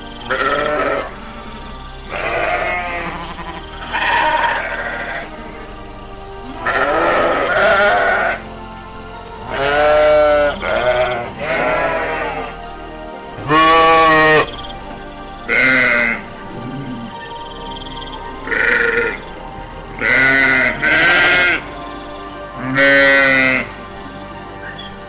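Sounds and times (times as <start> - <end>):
sheep bleating: 2.1 - 5.3, 6.6 - 8.4, 9.5 - 12.5.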